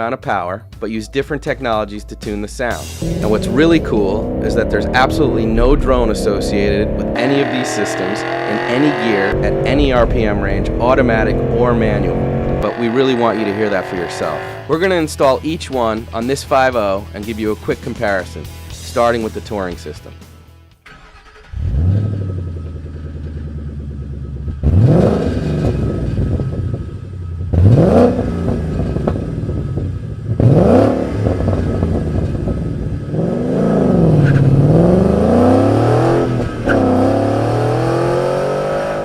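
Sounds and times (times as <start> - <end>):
car engine starting and revving: 2.7 - 15.3, 20.8 - 39.0.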